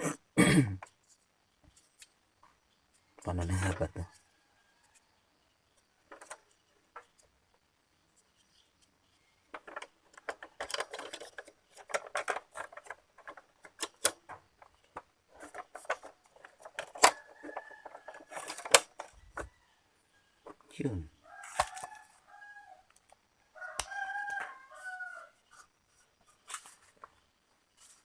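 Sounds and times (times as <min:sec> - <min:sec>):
plastic parts clicking and rattling: 0:06.1 - 0:07.3, 0:08.8 - 0:19.5.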